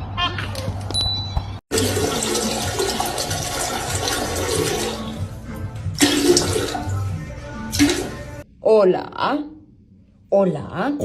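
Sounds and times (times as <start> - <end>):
water rushing: 1.7 - 5.2, 6.0 - 6.9.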